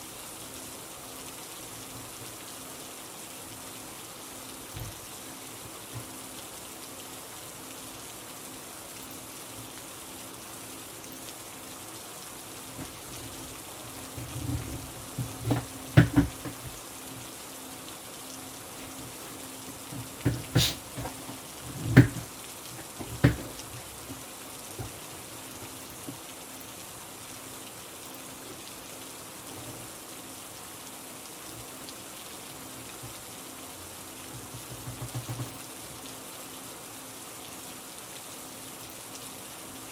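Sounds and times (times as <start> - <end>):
steady rain hiss: 0.0 - 39.9
sharp knocks and taps: 12.8 - 16.8, 18.8 - 24.2, 34.3 - 35.6.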